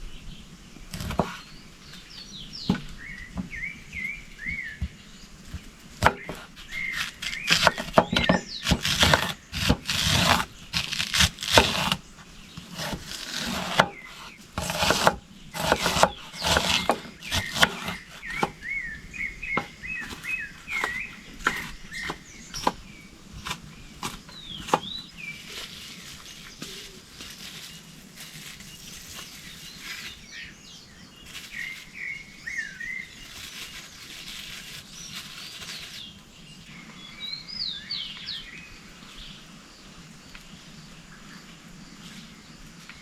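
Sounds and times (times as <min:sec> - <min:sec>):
small birds chirping: 0:00.0 - 0:43.0
knocks and scrapes: 0:00.9 - 0:30.4.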